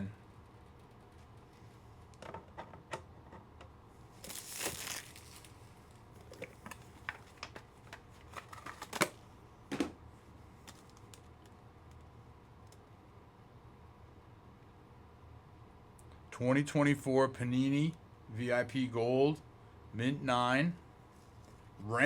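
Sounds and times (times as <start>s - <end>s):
card packaging crinkling: 4.2s - 9.2s, 10.6s - 11.3s.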